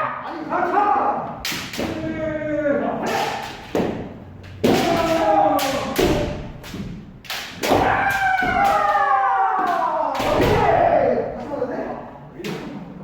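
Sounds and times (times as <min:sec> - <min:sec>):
people shouting: 0:00.0 - 0:03.8, 0:04.6 - 0:06.7, 0:07.6 - 0:11.4
bamboo sword strikes cracking: 0:03.0 - 0:10.7.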